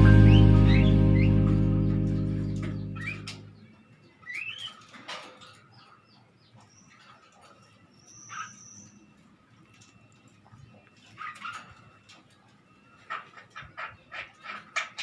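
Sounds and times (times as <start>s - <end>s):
background music: 0.0s - 3.6s
bird chirps: 0.0s - 15.0s.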